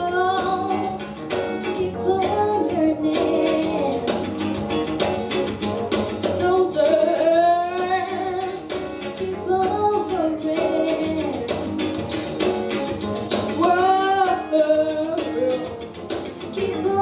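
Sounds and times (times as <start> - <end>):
woman singing: 0.0 - 4.2, 6.2 - 11.7, 13.6 - 15.7, 16.5 - 17.0
instrumental accompaniment with beat: 0.0 - 17.0.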